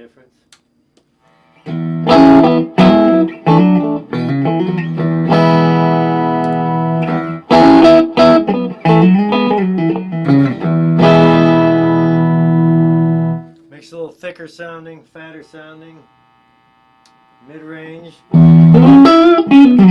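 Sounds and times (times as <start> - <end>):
clean electric guitar chords: 1.6 - 13.5, 17.3 - 19.9.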